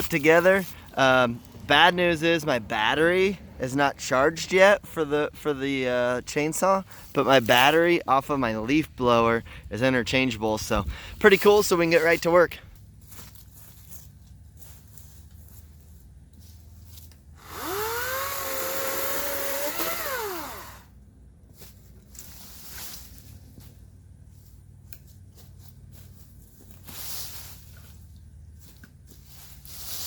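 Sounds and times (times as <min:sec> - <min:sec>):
electric chainsaw motor whine: 0:17.3 - 0:21.0.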